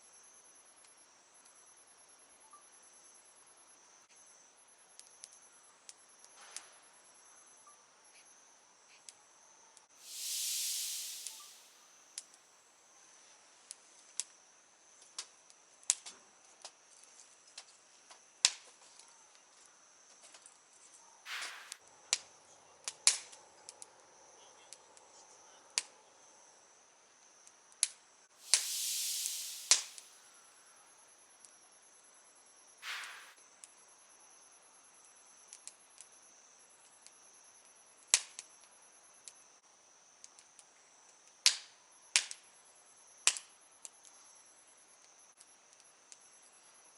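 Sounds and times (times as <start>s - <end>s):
fire hissing flare: 10.0s - 12.0s, 21.3s - 21.8s, 28.4s - 30.6s, 32.8s - 33.4s
high insect trill: 10.0s - 12.0s, 28.4s - 30.6s.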